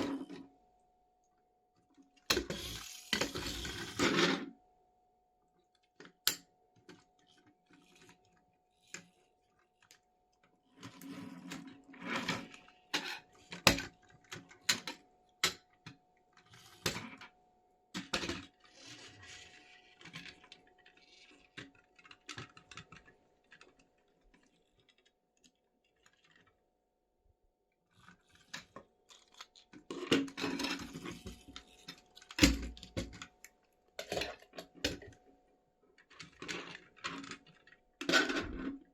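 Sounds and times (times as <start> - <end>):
plastic parts clicking and knocking: 28.0 - 35.2.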